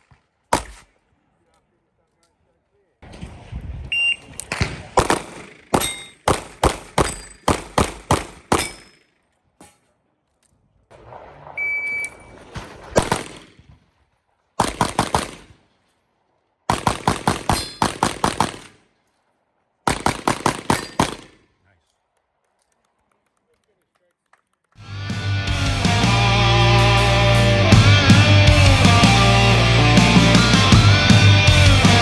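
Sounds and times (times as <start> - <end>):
pistol shots: 0.0 - 1.0, 4.3 - 9.8, 13.0 - 13.8, 14.6 - 15.7, 16.7 - 18.9, 19.8 - 21.6.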